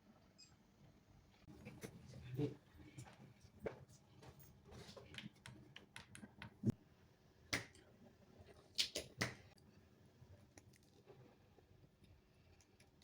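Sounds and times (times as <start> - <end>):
small clicks and taps: 5.0 - 6.7.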